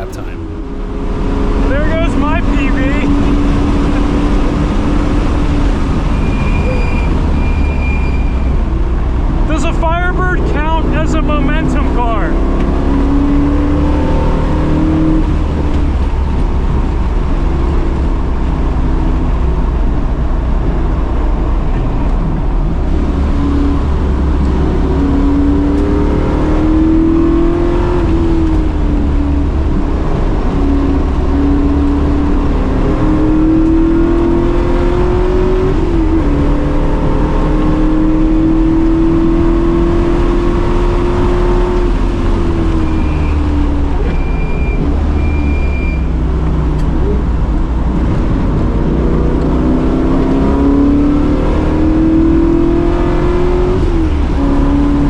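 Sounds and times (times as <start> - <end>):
car engine revving: 0.0 - 6.4, 22.9 - 44.2, 46.1 - 55.0.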